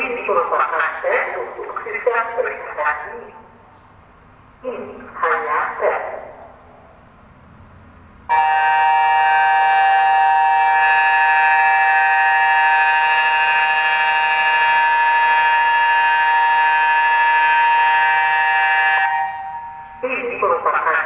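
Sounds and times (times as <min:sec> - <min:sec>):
warning siren steady chord: 0:08.3 - 0:20.8.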